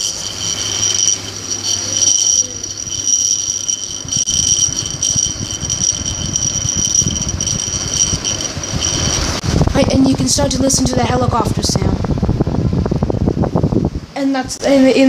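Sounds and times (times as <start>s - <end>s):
high-pitched whine: 0.0s - 9.4s
ceiling fan whooshing: 0.0s - 15.0s.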